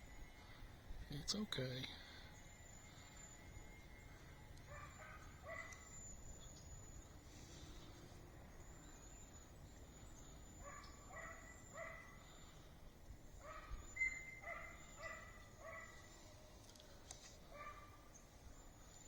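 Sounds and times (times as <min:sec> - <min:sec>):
faint animal yelps: 0:13.4 - 0:16.0.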